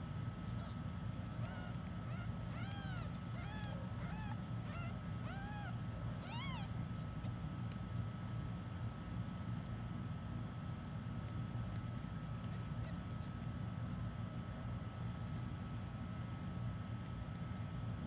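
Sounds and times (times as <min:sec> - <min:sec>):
kittens mewing: 0:00.5 - 0:07.4.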